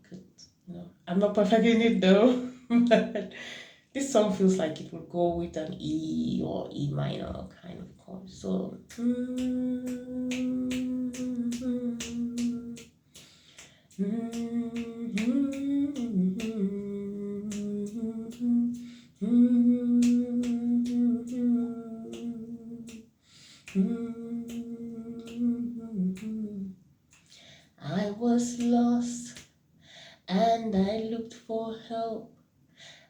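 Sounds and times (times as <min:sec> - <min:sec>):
person humming a slow melody: 0:08.8 - 0:13.3, 0:13.9 - 0:27.2
finger snaps: 0:08.9 - 0:27.5.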